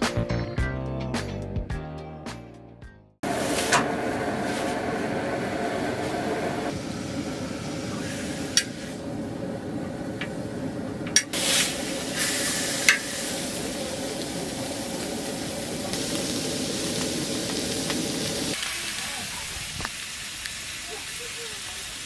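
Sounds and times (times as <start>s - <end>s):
food sizzling in a pan: 11.3s - 22.0s.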